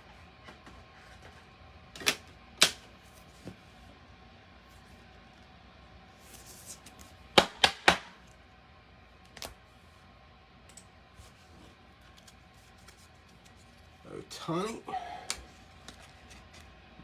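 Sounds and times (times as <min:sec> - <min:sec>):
cards and packaging clicking: 0:14.6 - 0:16.8.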